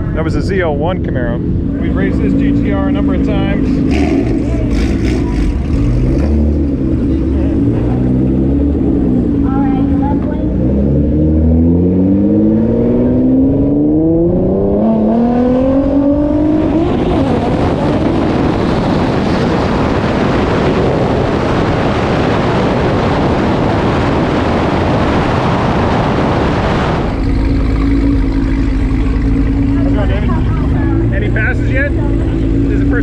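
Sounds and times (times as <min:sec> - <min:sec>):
car accelerating hard: 0:00.0 - 0:33.0.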